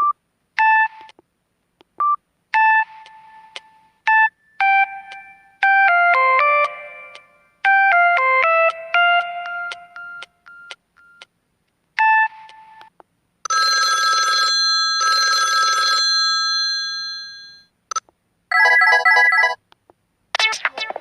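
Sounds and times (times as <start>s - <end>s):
phone ringing tone: 13.5s - 17.7s, 18.5s - 19.6s.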